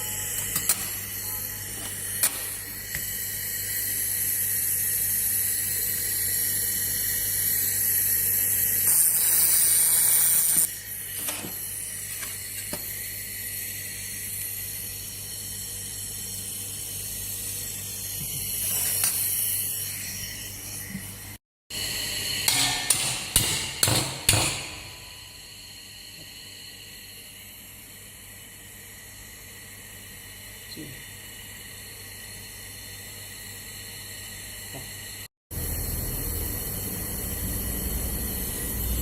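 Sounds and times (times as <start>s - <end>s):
welding machine hum: 0.0s - 24.5s, 35.5s - 39.0s
sharp metallic knocks: 22.5s - 25.0s.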